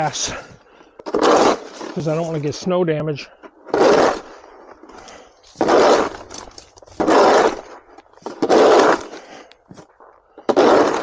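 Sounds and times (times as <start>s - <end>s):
snow shovel scraping icy snow: 1.0s - 2.7s, 3.6s - 11.0s.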